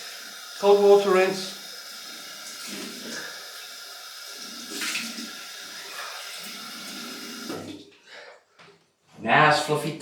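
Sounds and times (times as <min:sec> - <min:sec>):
water splashing on face: 0:04.6 - 0:07.8
tap running into sink: 0:06.0 - 0:07.8.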